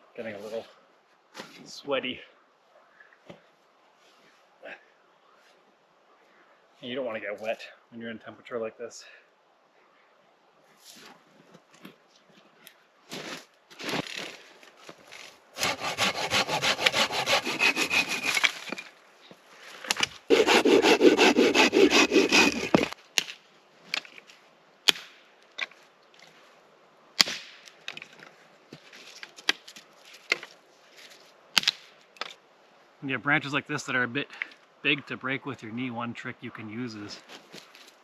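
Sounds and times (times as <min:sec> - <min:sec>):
hand saw cutting wood: 0:15.6 - 0:18.8, 0:19.9 - 0:23.0.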